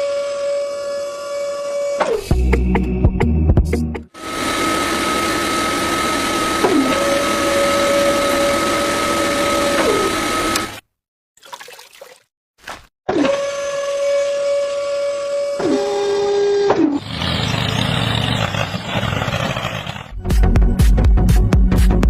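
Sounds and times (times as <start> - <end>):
motor winding down: 4.2 - 10.8
water pump motor whine: 4.2 - 10.8, 13.2 - 16.7.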